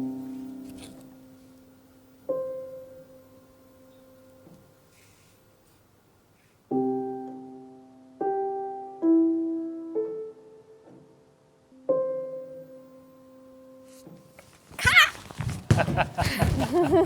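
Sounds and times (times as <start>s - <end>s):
solo piano chords: 6.7s - 13.8s.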